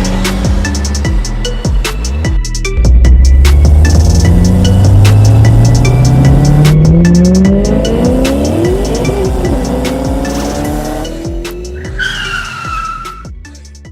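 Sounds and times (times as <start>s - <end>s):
sports car engine accelerating: 0.0s - 12.8s
electronic music beat: 0.0s - 13.8s
tire squeal: 11.6s - 13.3s.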